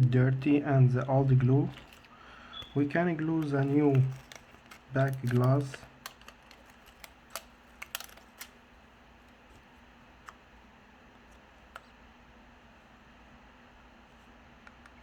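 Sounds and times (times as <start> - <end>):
small tools clicking and tapping: 1.7 - 8.6.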